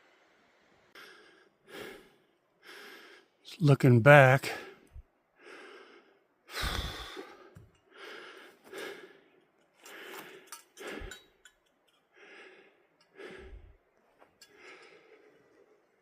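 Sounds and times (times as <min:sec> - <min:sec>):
man breathing hard: 0:01.0 - 0:03.4, 0:04.6 - 0:11.4, 0:12.0 - 0:16.0.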